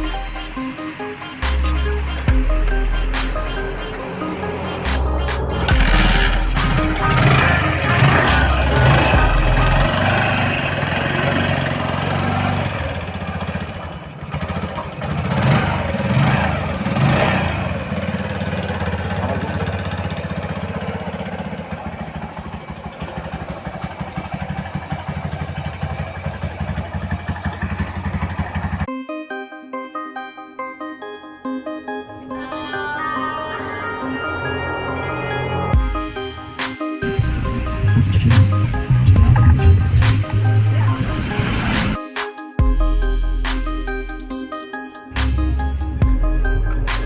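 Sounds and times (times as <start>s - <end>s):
motorcycle engine revving and idling: 0.0s - 28.9s, 35.7s - 42.0s, 45.2s - 47.0s.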